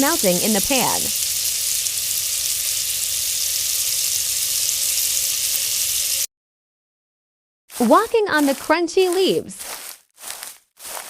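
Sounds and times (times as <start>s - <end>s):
butter sizzling in a pan: 0.0s - 6.3s.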